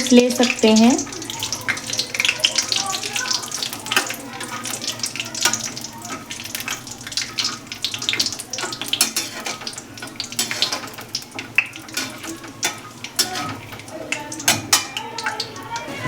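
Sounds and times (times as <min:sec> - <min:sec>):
almonds sizzling in hot fat: 0:00.0 - 0:16.0
spatula scraping a pan: 0:03.5 - 0:16.0.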